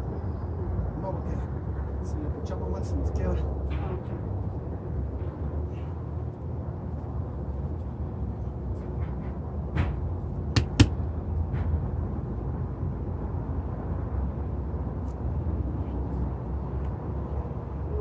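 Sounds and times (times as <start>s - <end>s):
sharp knocks: 9.2s - 11.0s.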